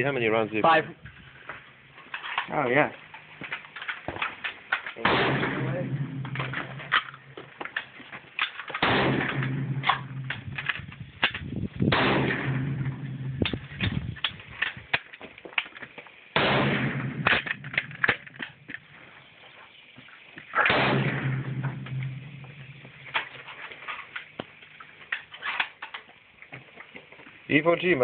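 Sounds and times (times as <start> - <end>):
sharp clicks and knocks: 3.1 - 11.5
rifle shots ringing: 5.0 - 7.3, 8.7 - 13.5, 16.4 - 18.3, 20.6 - 23.2.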